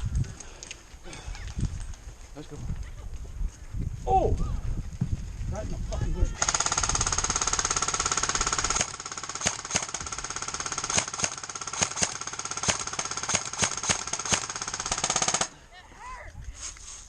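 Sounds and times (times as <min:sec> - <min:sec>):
airsoft gun automatic fire: 0:06.4 - 0:15.5.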